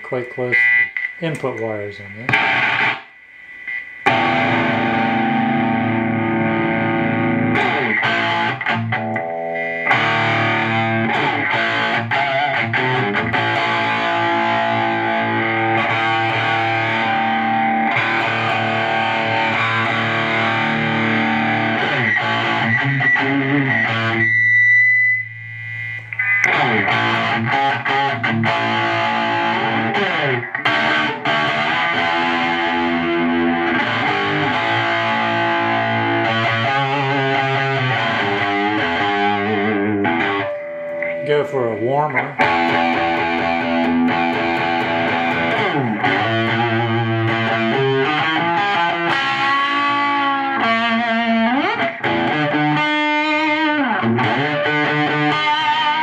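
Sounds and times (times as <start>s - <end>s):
distorted electric guitar: 0.0s - 56.0s
high steady whistle: 24.2s - 26.4s, 40.4s - 41.4s.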